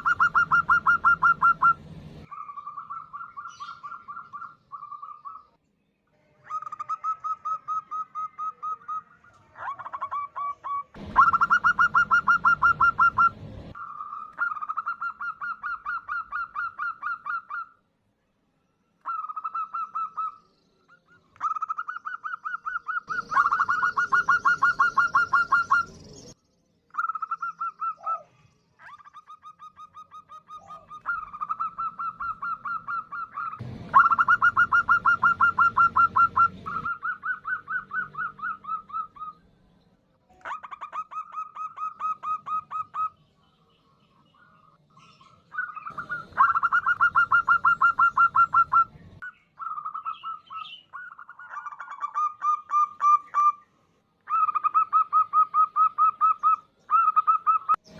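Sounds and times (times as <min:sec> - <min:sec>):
dove cooing in rapid trains: 0:00.0 - 0:05.4, 0:06.4 - 0:17.8, 0:21.4 - 0:25.9, 0:27.0 - 0:39.4, 0:45.3 - 0:49.0.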